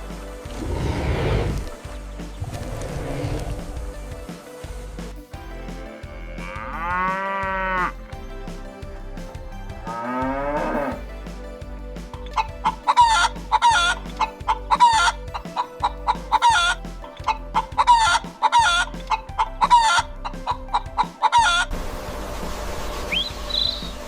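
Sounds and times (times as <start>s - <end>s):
chickens clucking: 12.3s - 21.7s.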